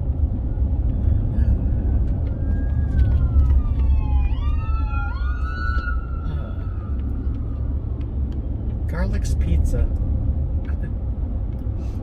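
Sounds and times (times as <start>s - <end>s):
road rumble inside car: 0.0s - 12.0s
siren wailing: 1.0s - 7.8s.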